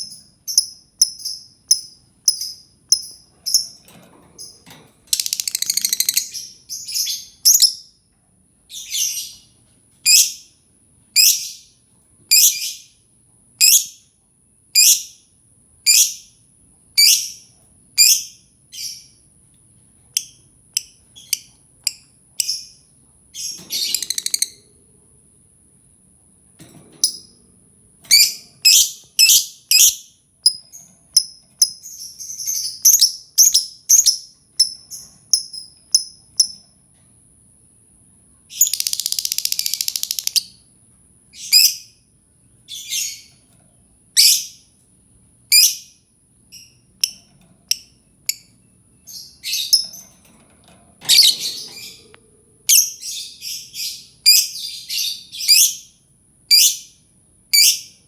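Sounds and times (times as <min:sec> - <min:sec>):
bird buzzing chatter: 0:04.4 - 0:07.7, 0:23.4 - 0:24.7, 0:38.5 - 0:40.6
bird shrill chirps: 0:23.4 - 0:24.6.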